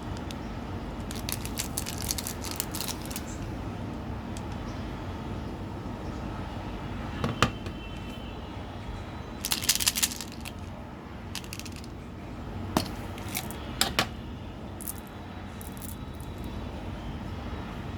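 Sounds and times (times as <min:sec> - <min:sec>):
small hard objects clicking: 0:01.0 - 0:03.4, 0:09.4 - 0:10.7, 0:11.4 - 0:11.9, 0:14.8 - 0:16.5.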